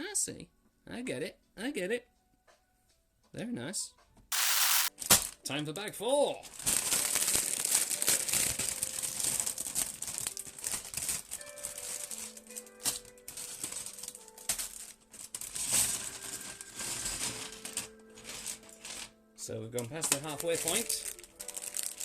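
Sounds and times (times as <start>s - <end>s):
soft background music: 0.0s - 4.3s, 4.9s - 22.0s
plastic bag crinkling: 6.5s - 18.8s, 20.1s - 22.0s.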